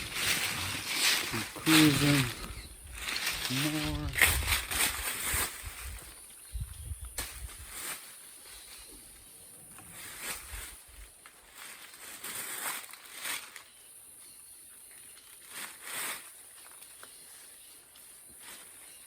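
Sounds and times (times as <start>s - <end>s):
footsteps crunching through leaves: 0.0s - 6.2s, 9.9s - 13.7s
high-pitched insect hum: 0.0s - 11.1s.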